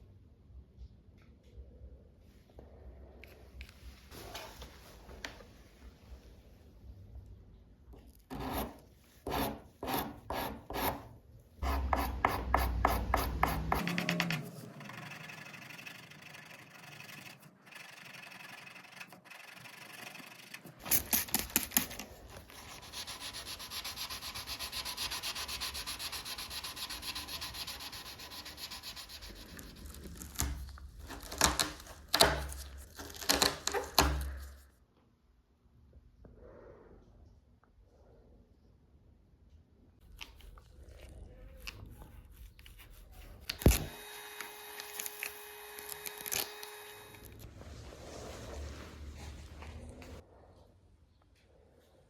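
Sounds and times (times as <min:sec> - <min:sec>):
sandpaper scratching: 0:18.2 - 0:31.9.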